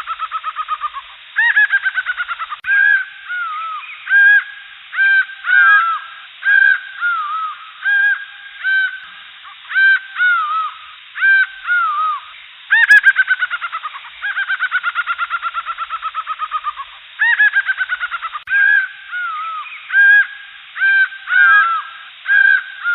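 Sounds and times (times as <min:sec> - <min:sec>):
birds giving harsh caw-like calls: 0:00.0 - 0:22.9.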